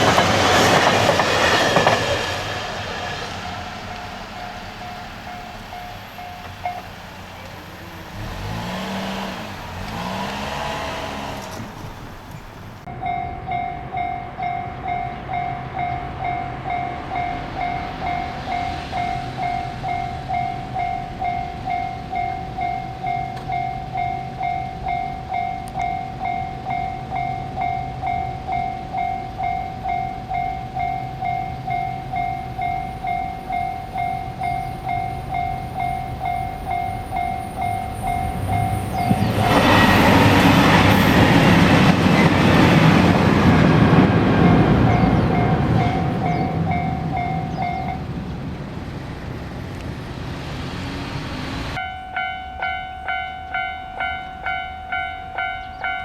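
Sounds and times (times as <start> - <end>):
train passing: 0.0 - 56.0
level-crossing alarm bell ringing: 3.4 - 7.1, 12.9 - 42.5, 44.3 - 48.2, 51.8 - 56.0.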